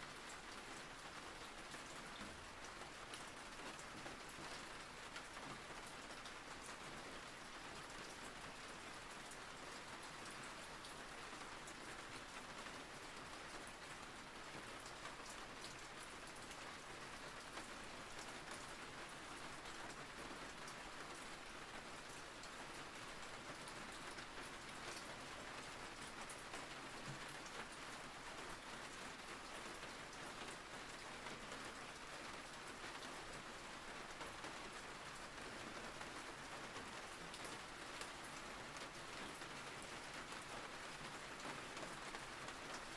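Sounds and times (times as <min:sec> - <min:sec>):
steady rain falling: 0:00.0 - 0:42.9.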